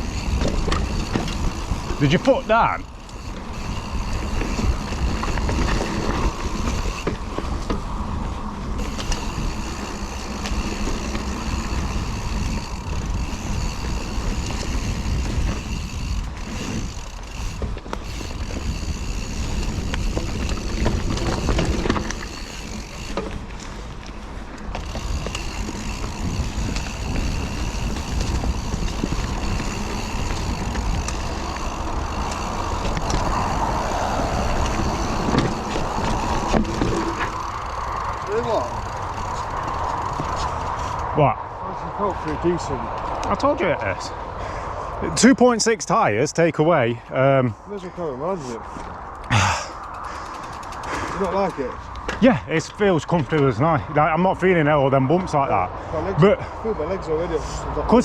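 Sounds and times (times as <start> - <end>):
wind on microphone: 0.0 - 23.1, 24.8 - 43.1
bike rattling: 0.0 - 58.0
bike tyre noise on dirt: 0.0 - 58.0.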